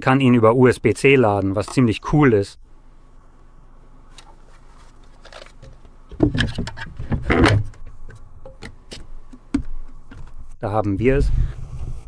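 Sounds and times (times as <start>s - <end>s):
plastic battery pack handling: 4.0s - 10.5s.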